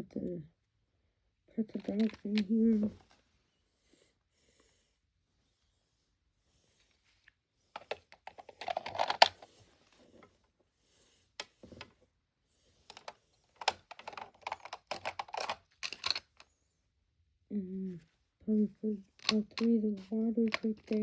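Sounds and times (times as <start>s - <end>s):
plastic toys clattering: 1.7s - 3.1s, 7.8s - 9.5s, 12.9s - 16.4s, 19.1s - 21.0s.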